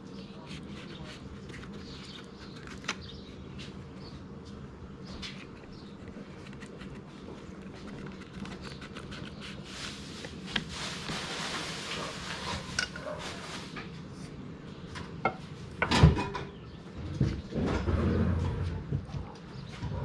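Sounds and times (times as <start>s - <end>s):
objects rustling: 6.4s - 14.0s.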